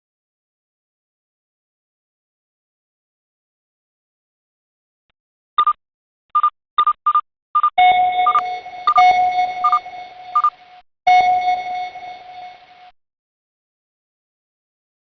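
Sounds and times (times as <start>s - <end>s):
short high beeps: 6.4s - 13.0s
steady lower electronic tone: 7.8s - 13.0s.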